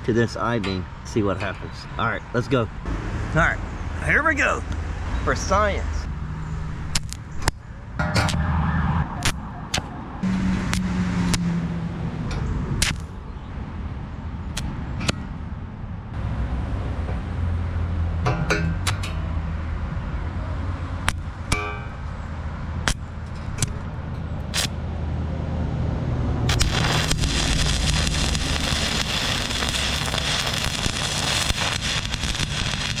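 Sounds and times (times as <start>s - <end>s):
welding arc pops and clicks: 6.9s - 7.6s, 9.2s - 9.9s, 10.6s - 11.5s, 12.8s - 13.2s, 14.5s - 15.2s, 18.2s - 19.3s, 21.0s - 22.1s, 22.8s - 24.8s, 26.5s - 33.0s
steady low hum: 7.8s - 33.0s.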